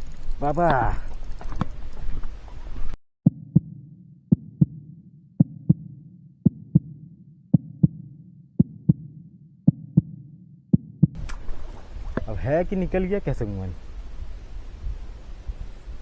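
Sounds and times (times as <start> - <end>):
outdoor background noise: 0.0 - 3.0, 11.2 - 16.0
low hum: 11.2 - 16.0
heartbeat thumps: 13.8 - 16.0.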